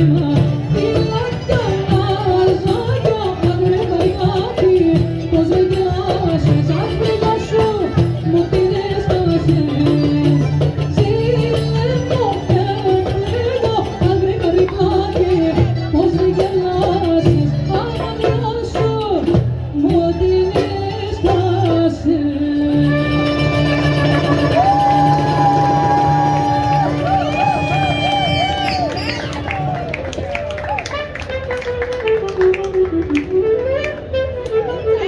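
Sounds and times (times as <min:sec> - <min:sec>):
tambourine-like percussion: 0:22.6 - 0:29.2.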